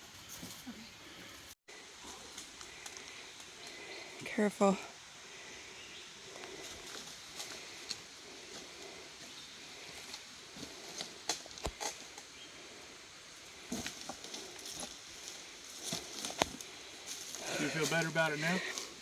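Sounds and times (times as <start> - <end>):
jungle background: 0.0 - 19.0
footsteps on bamboo bridge: 13.7 - 19.0.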